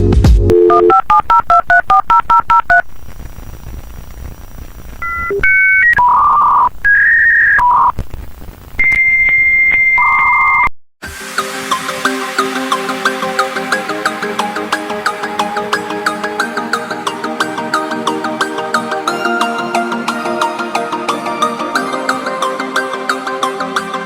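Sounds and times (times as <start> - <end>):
telephone line signalling tones: 0.5 - 2.8, 5.0 - 8.0, 8.8 - 10.7
touch-tone dialing beeps: 0.5 - 2.8, 5.0 - 7.0, 8.8 - 10.7.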